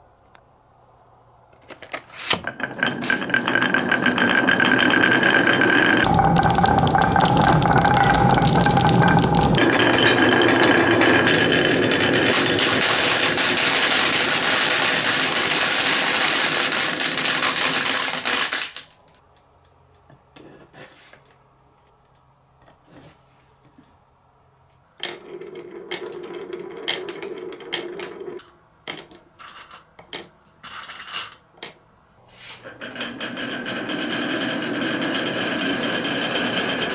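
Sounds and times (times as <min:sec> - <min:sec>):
marbles rattling and rolling: 0:02.4 - 0:18.9, 0:32.6 - 0:36.9.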